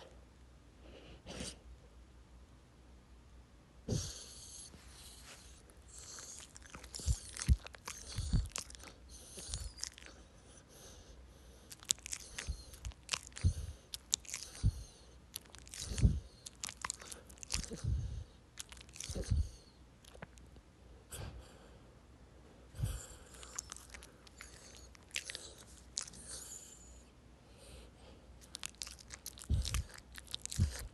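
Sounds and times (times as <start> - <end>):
dog snoring: 3.9 - 18.3, 19.0 - 19.7, 22.8 - 27.8
wet clicking and smacking: 6.1 - 10.2, 11.7 - 20.5, 23.4 - 26.4, 28.4 - 30.9.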